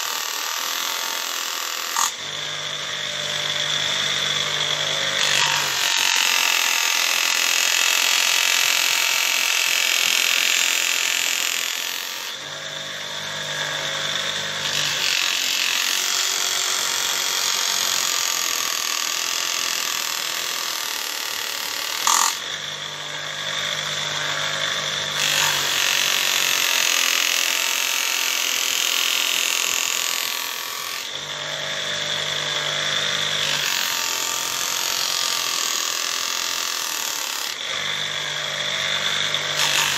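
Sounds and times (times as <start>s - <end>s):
knife grinding on sharpener: 22.0s - 26.4s.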